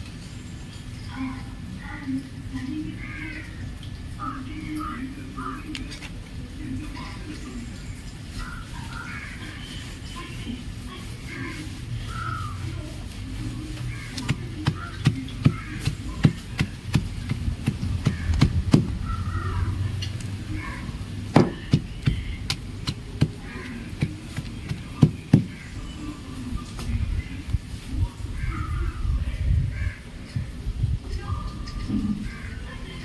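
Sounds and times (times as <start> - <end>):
chalk cracking and crunching: 13.1 - 19.4, 20.0 - 25.8.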